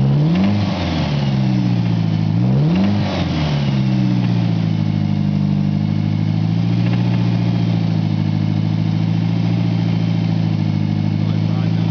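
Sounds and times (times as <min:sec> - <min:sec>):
car engine running: 0:00.0 - 0:11.9
engine knocking noise: 0:06.6 - 0:07.8.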